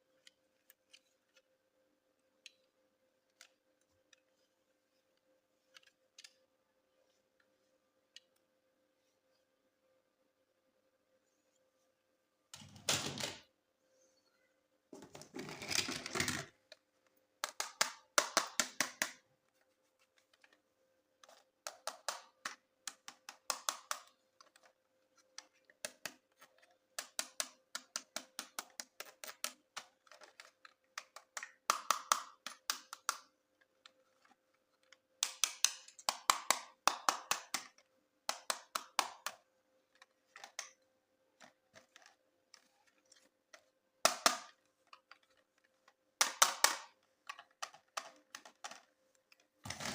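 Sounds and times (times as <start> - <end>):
faint steady hum: 0.0 - 49.9
plastic toy parts clicking: 21.2 - 40.8, 41.4 - 49.9.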